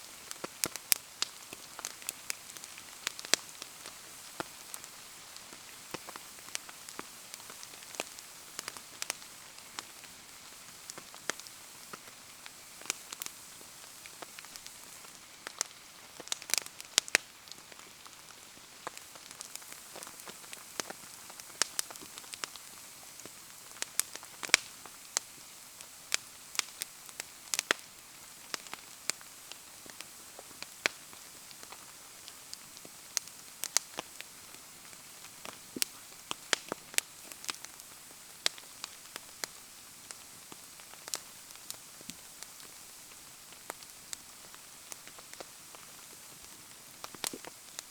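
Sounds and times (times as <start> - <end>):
bonfire crackling and popping: 0.0 - 47.9
falling rain hiss: 0.0 - 47.9.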